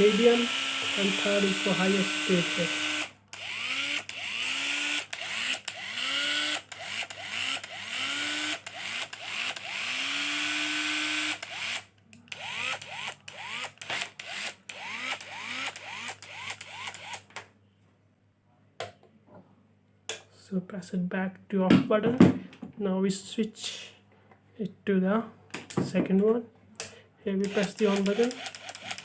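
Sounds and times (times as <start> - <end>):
electric screwdriver motor whirring: 0.0 - 17.3, 27.4 - 29.0.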